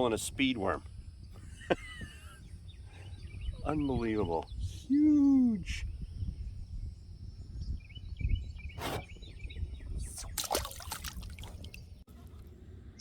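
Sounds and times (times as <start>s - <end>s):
wind rumbling on microphone: 0.0s - 13.0s
water splashing and dripping: 10.2s - 11.9s.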